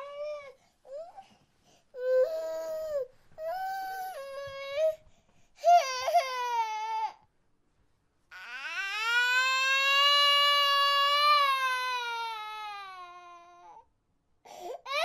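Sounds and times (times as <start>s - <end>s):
baby crying: 14.6s - 15.0s.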